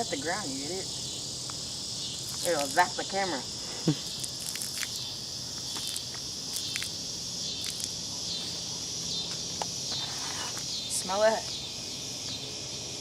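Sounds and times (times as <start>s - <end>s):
insects chirping: 0.0s - 13.0s.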